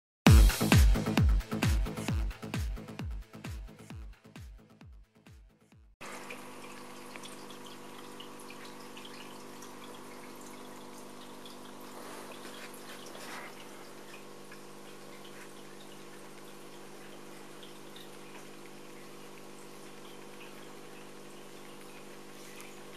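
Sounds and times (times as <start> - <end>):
electronic music: 0.3 - 5.9
fish tank water trickling: 6.0 - 22.9
steady electrical hum: 6.0 - 22.9.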